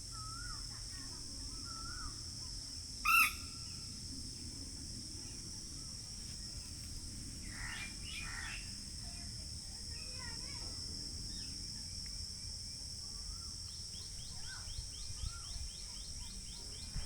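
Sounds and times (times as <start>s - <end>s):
high-pitched insect drone: 0.0s - 0.9s, 1.5s - 4.4s.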